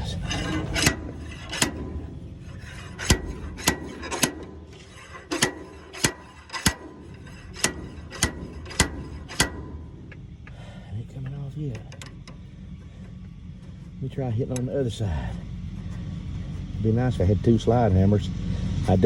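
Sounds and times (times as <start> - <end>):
slide hammer metal knocks: 0.0 - 10.5.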